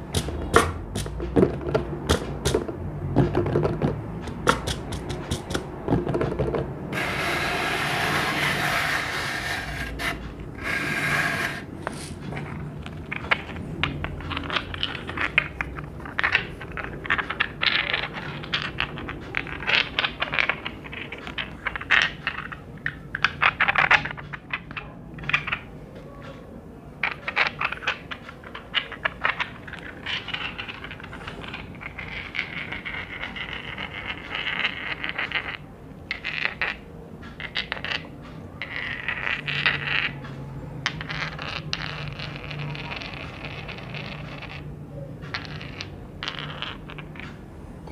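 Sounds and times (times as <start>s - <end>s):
tapping on hard objects: 0.0s - 11.6s
scraping: 6.9s - 12.5s.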